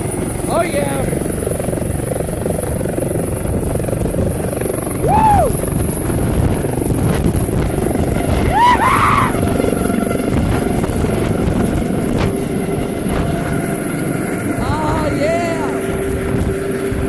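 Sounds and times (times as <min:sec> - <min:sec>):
helicopter rotor and turbine: 0:00.0 - 0:17.0
rising-and-falling whoops: 0:05.0 - 0:05.6, 0:08.3 - 0:09.7.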